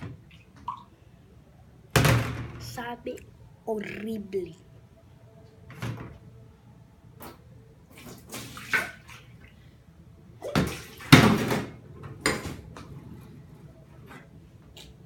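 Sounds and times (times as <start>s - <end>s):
water splashing and pouring: 8.0s - 9.4s.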